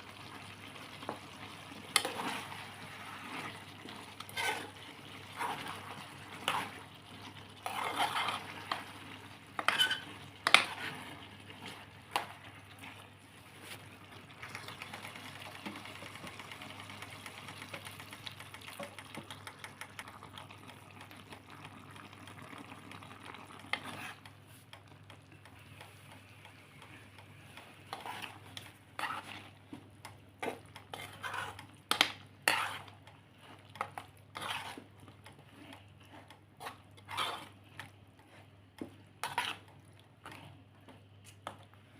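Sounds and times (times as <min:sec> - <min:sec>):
food sizzling: 0:00.0 - 0:13.2, 0:13.9 - 0:24.2
metal utensil scraping pan: 0:01.9 - 0:06.8, 0:07.6 - 0:11.1, 0:27.9 - 0:29.5, 0:30.4 - 0:35.0, 0:36.1 - 0:37.7, 0:39.2 - 0:39.7.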